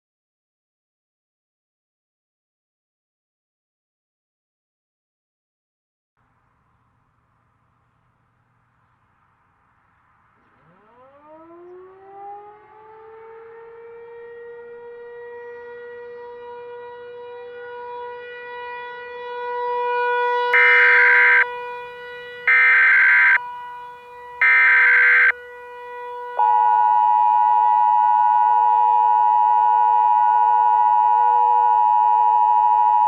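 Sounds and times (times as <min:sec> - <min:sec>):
warning siren steady tone: 0:10.4 - 0:33.0
harsh data bursts: 0:20.6 - 0:21.4, 0:24.4 - 0:25.3
two-tone attention signal: 0:24.4 - 0:25.3.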